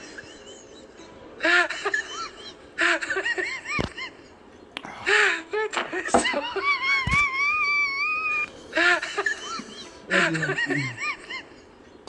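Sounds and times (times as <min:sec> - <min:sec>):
person whimpering: 0:10.1 - 0:11.0.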